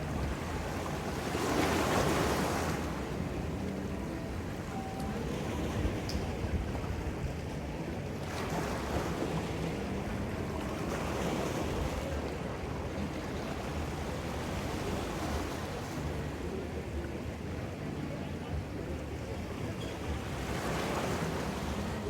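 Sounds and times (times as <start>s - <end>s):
ocean surf washing: 0.0s - 7.1s.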